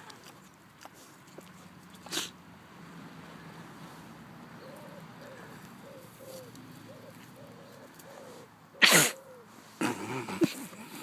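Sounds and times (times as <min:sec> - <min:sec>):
pig sneezing: 0:02.0 - 0:02.4, 0:08.8 - 0:11.0.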